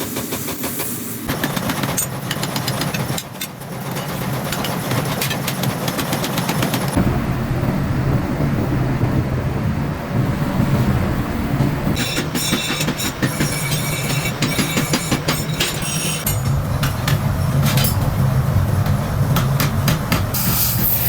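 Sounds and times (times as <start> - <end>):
metal clanking strikes: 12.0 - 18.2.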